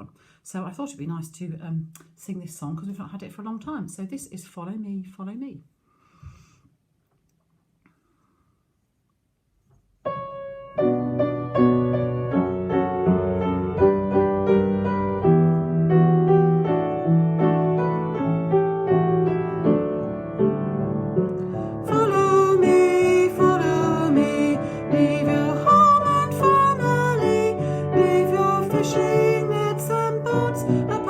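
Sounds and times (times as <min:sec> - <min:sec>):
piano playing a hymn: 0:10.1 - 0:31.0.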